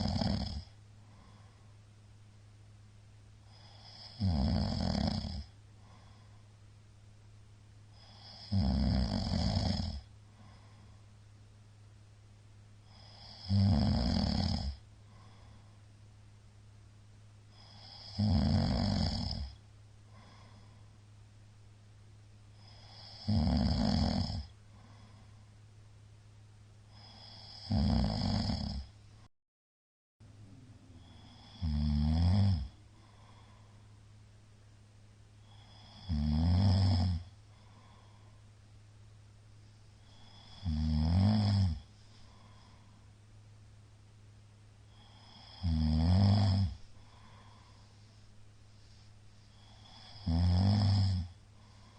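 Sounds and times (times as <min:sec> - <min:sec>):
man snoring loudly: 0:00.0 - 0:00.7, 0:03.5 - 0:05.5, 0:08.0 - 0:10.1, 0:12.9 - 0:14.8, 0:17.6 - 0:19.6, 0:22.6 - 0:24.5, 0:26.9 - 0:28.9, 0:31.0 - 0:33.6, 0:35.5 - 0:38.0, 0:40.2 - 0:42.6, 0:44.9 - 0:47.6, 0:49.6 - 0:51.4.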